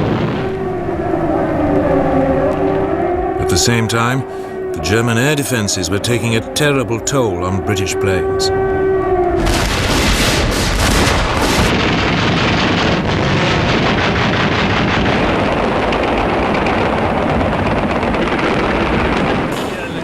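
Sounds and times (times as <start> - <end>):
anti-aircraft gunfire: 0.0 - 0.8, 9.4 - 20.0
shell bursts: 9.4 - 20.0.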